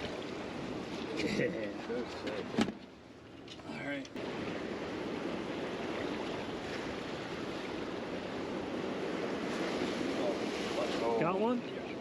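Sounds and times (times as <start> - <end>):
ocean water rushing: 4.2 - 12.0.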